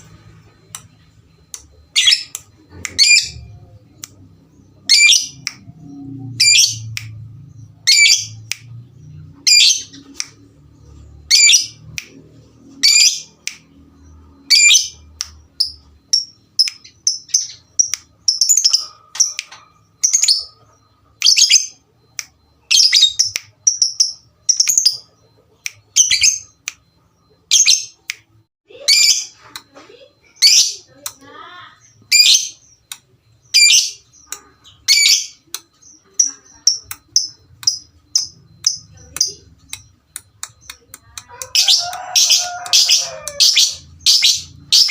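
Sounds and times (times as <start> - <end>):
lovebird chirping calls: 0.0 - 10.4, 28.7 - 44.9.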